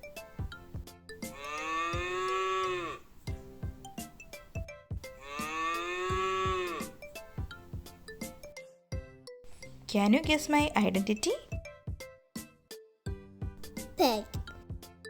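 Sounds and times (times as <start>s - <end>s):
cow mooing: 1.2s - 3.1s, 5.0s - 7.3s.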